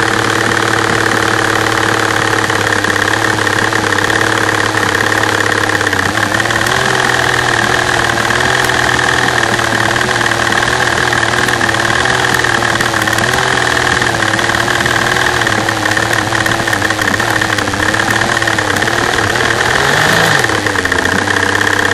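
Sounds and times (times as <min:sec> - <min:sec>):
fast fuel injector tapping: 0:00.0 - 0:21.9
misfiring engine running: 0:00.0 - 0:21.9.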